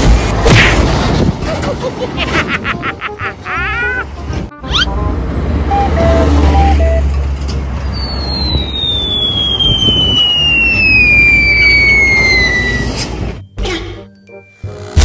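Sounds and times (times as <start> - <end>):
loud rumbling noise: 7.1 - 13.4
high whistle gliding downward: 7.8 - 13.1.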